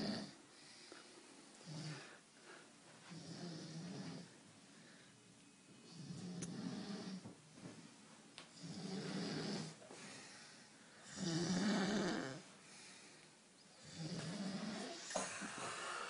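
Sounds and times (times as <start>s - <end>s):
man snoring: 0.0s - 0.4s, 1.6s - 2.1s, 3.1s - 4.3s, 5.9s - 7.2s, 8.6s - 9.8s, 11.0s - 12.4s, 13.8s - 16.0s.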